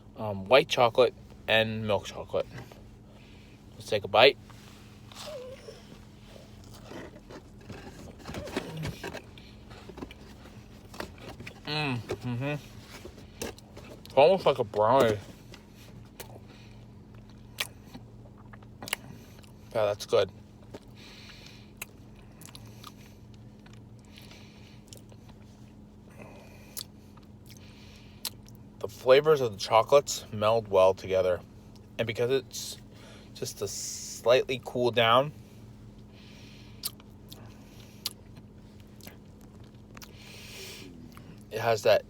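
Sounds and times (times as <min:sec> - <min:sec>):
faint steady hum: 0:00.0 - 0:42.0
person chewing cookie: 0:04.9 - 0:14.2, 0:15.9 - 0:19.7, 0:20.5 - 0:28.6, 0:36.6 - 0:41.5
chewing cookie: 0:36.8 - 0:41.5.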